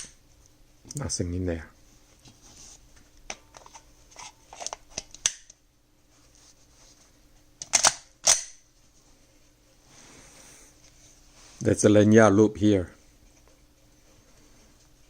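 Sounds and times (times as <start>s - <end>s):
pistol handling clicks: 7.6s - 8.6s.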